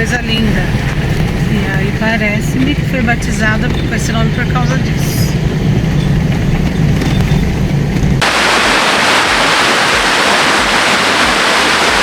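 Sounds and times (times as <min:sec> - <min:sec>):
car rumbling on road: 0:00.0 - 0:12.0
loud rush of water: 0:08.2 - 0:12.0.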